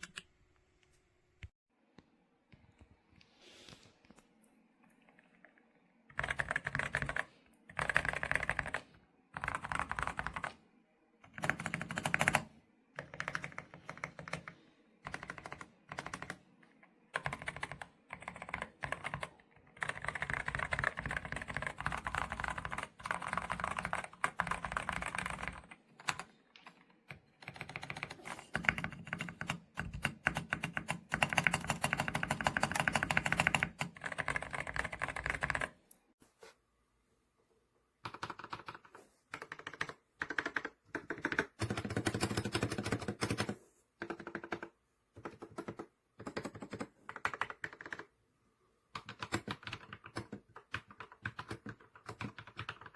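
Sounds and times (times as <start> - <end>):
typing on mechanical keyboard: 6.1 - 8.8, 9.4 - 10.6, 11.3 - 16.4, 17.1 - 35.8, 38.0 - 48.1, 49.0 - 52.9.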